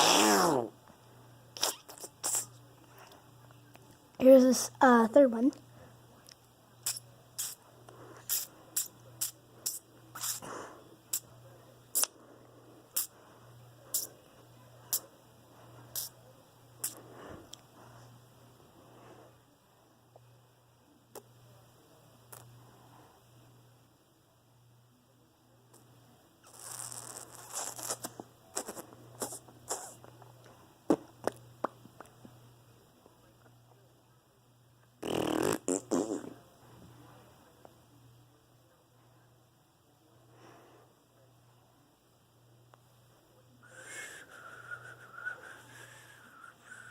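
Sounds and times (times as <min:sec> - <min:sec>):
person spitting hiss: 0:00.0 - 0:00.7, 0:01.6 - 0:02.6, 0:06.8 - 0:07.6, 0:08.2 - 0:10.5, 0:11.9 - 0:12.2, 0:13.0 - 0:13.2, 0:13.9 - 0:14.1, 0:15.9 - 0:16.2, 0:26.4 - 0:30.0, 0:35.0 - 0:36.3
mouth clicks: 0:01.6 - 0:02.6, 0:06.3 - 0:07.6, 0:08.2 - 0:10.4, 0:11.9 - 0:12.2, 0:16.8 - 0:17.6.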